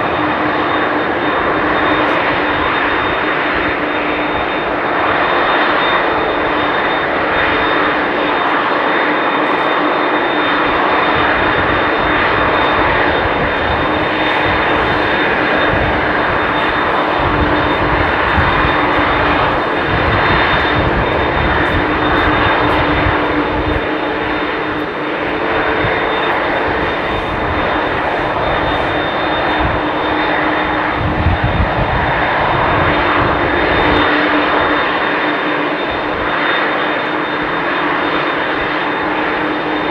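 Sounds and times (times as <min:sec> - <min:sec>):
high engine whine: 0:00.0 - 0:39.9
jet engines roaring: 0:00.0 - 0:39.9.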